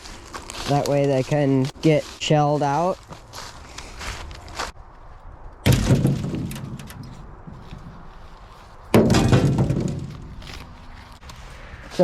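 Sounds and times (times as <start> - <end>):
corn thudding on sheet metal: 5.6 - 7.1, 9.0 - 10.3.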